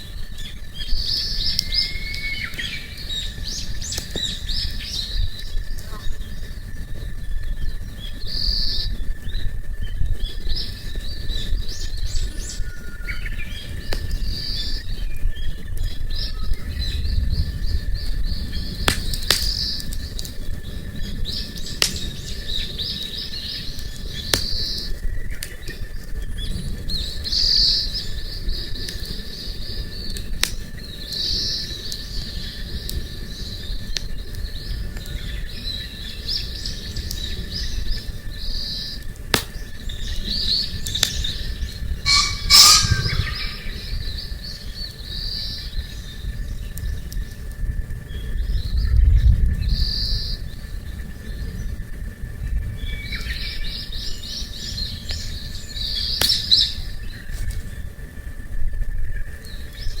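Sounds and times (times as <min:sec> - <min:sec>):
small birds chirping: 0:00.0 - 0:58.1
campfire crackling: 0:00.0 - 1:00.0
low rumble: 0:39.5 - 0:45.0.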